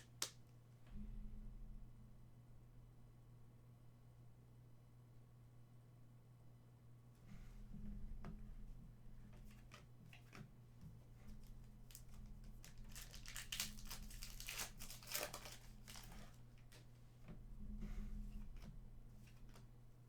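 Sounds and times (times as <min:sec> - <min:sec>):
card pack wrappers crinkling: 0:12.6 - 0:16.4.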